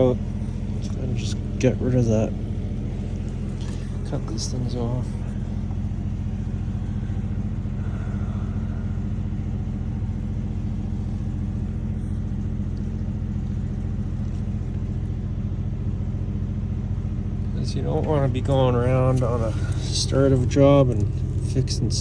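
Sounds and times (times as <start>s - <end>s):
engine idling: 0.0s - 22.0s.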